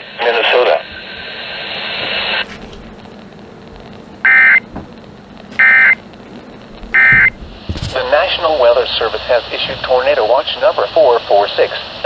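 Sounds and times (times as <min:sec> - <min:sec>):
faint radio hiss: 0:00.0 - 0:12.0.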